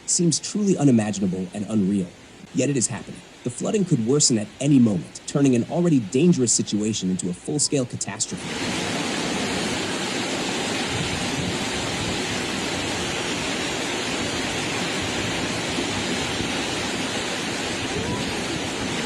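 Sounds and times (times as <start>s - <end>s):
floodwater rushing: 0.0s - 19.0s.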